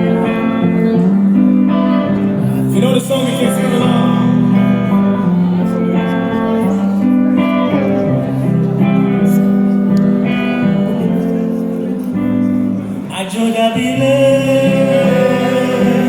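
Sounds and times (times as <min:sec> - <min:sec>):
guitar over sustained chords: 0:00.0 - 0:16.0.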